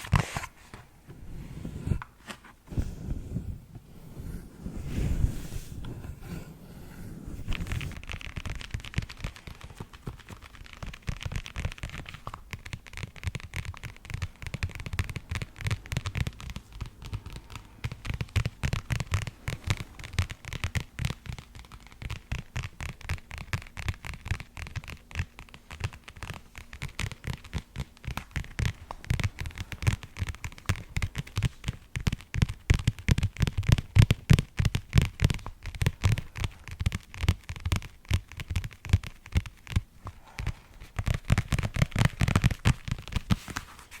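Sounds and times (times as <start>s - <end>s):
scratchy hiss: 0.0s - 32.6s
fast light tapping on hard object: 7.5s - 43.6s.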